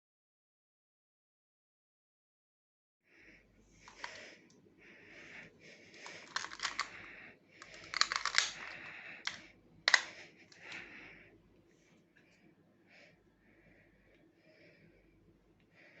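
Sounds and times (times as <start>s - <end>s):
pistol handling clicks and rattles: 6.0s - 7.0s, 7.6s - 10.7s.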